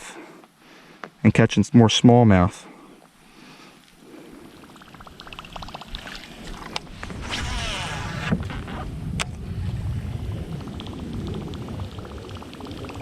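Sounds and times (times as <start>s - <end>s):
water moving around kayak hull: 4.3s - 13.0s
wind on microphone: 6.5s - 13.0s.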